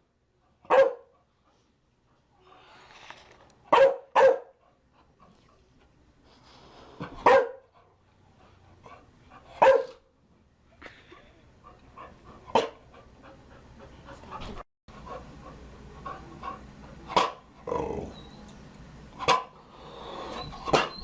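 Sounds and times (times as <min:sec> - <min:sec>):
dog barking: 0:00.7 - 0:01.1, 0:03.7 - 0:04.6, 0:07.2 - 0:07.7, 0:09.6 - 0:10.0, 0:12.5 - 0:12.8, 0:17.1 - 0:17.4, 0:19.2 - 0:19.6.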